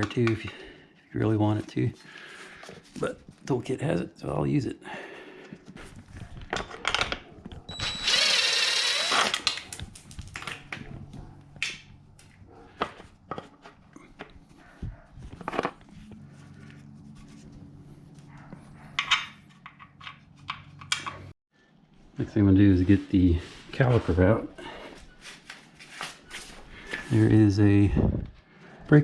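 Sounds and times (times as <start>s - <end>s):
tools clinking and knocking: 18.9s - 21.2s.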